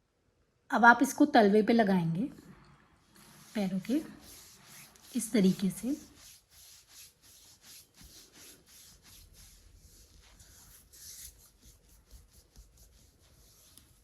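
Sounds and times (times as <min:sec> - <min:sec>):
hands rubbing skin: 0:03.1 - 0:14.0.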